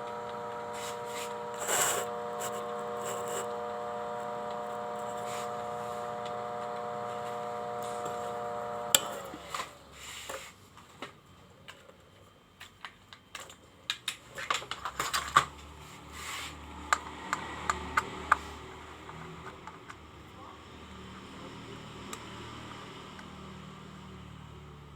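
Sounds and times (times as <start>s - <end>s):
steady humming tone: 0.0s - 9.9s.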